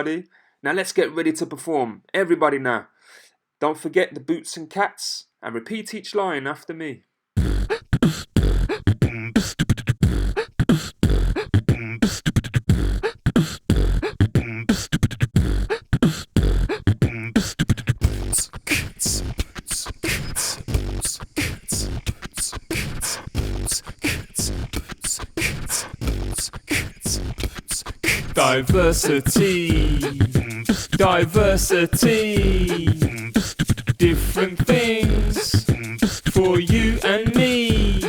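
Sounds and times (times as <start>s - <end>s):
beatboxed kick and snare: 7.4s - 38.0s
beatboxed hissing hi-hat ticks: 8.0s - 38.0s.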